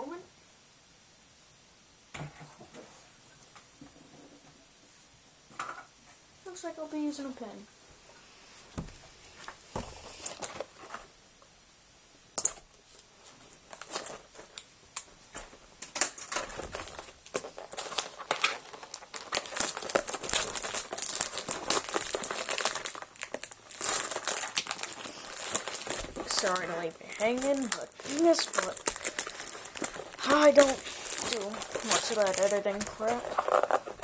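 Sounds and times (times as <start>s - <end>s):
plastic wrap crinkling and tearing: 13.5s - 34.0s.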